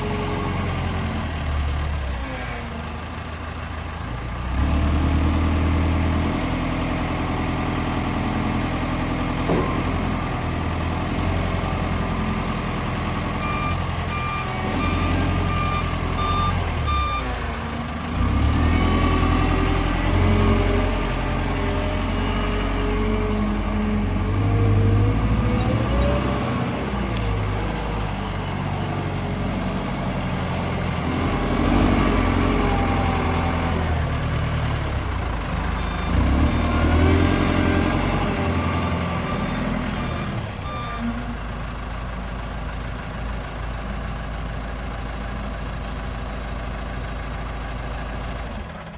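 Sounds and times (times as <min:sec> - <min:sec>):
forklift diesel engine: 0:00.0 - 0:48.9
short warning beeps: 0:13.4 - 0:17.3.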